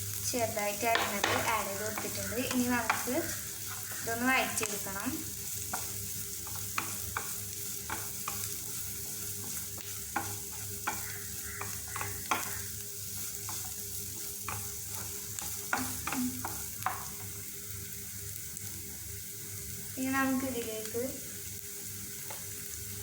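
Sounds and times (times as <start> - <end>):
vegetables sizzling in hot oil: 0.0 - 23.0
utensil scraping and tapping pan: 0.9 - 4.0, 5.6 - 13.8, 14.4 - 17.3.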